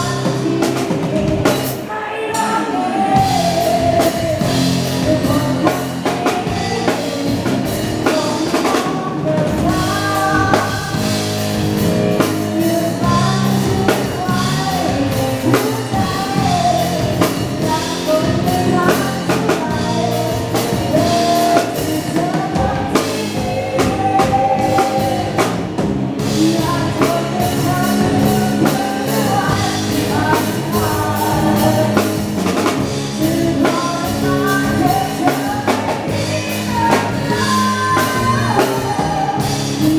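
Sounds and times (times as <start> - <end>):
drum kit beat: 0.0 - 39.9
live band playing dance song: 0.0 - 39.9
person singing: 0.0 - 39.9.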